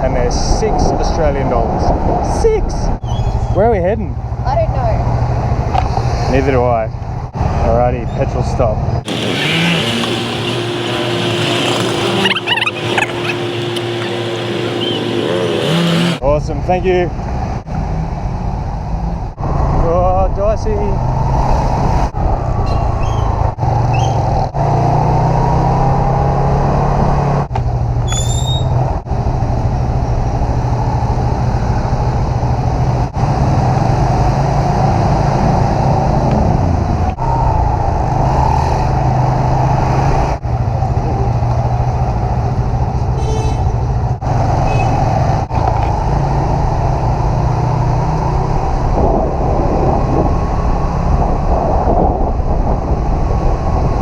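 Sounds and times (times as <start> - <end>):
traffic: 0.0 - 54.0
high rising squeal: 9.1 - 16.2
scooter engine running: 9.1 - 16.2
wind buffeting microphone: 18.5 - 26.3, 45.2 - 54.0.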